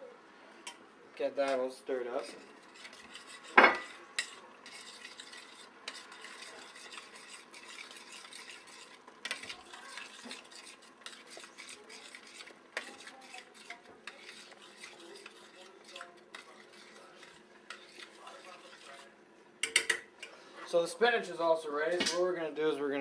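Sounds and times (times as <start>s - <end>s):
utensil scraping a pot: 2.1s - 20.4s.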